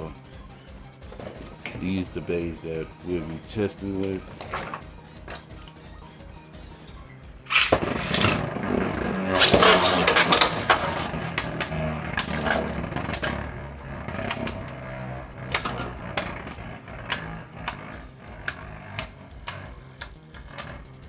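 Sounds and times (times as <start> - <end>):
spinning top launch rip: 7.4 - 19.9
spinning tops clashing: 7.5 - 14.7.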